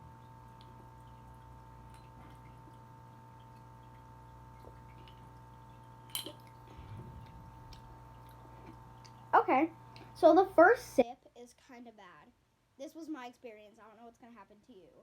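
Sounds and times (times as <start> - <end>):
electrical hum: 0.0 - 11.1
faint small ticks: 0.2 - 6.7.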